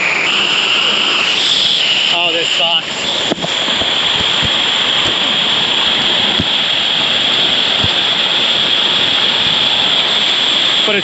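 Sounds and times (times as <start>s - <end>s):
river water rushing: 0.0s - 11.0s.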